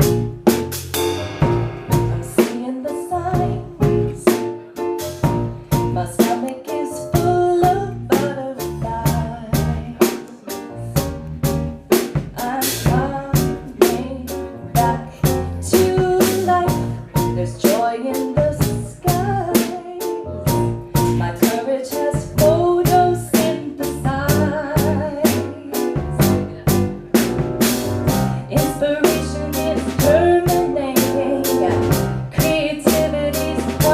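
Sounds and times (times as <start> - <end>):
instruments playing a steady beat: 0.0 - 2.7, 24.3 - 33.9
person singing: 1.3 - 4.6.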